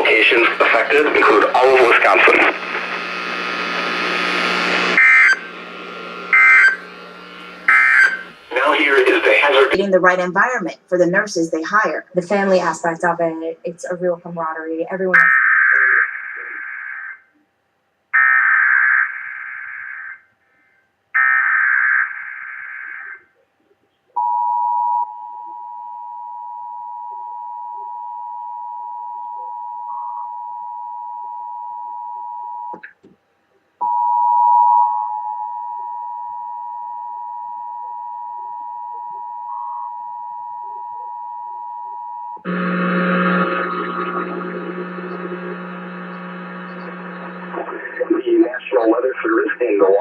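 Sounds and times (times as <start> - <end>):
screeching digital data bursts: 0.0 - 9.8.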